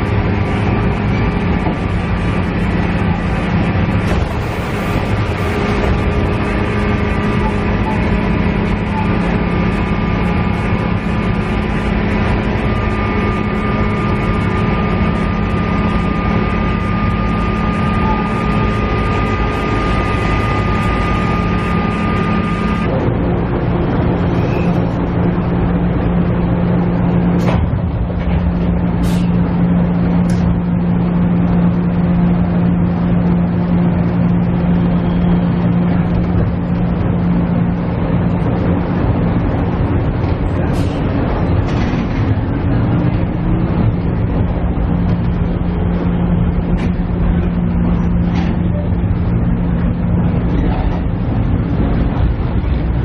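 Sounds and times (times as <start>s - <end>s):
high-pitched whine: 0.0s - 27.6s
railcar engine drone: 0.0s - 53.0s.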